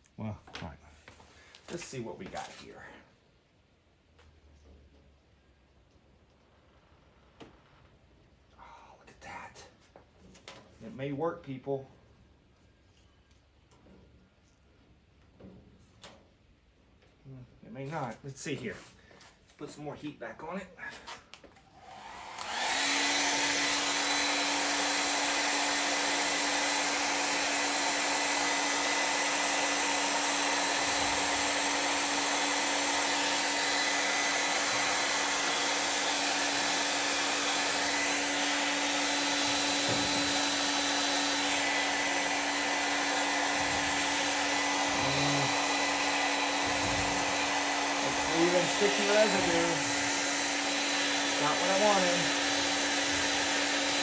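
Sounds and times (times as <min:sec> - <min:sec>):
hot-air blower blowing: 0:21.0 - 0:54.0.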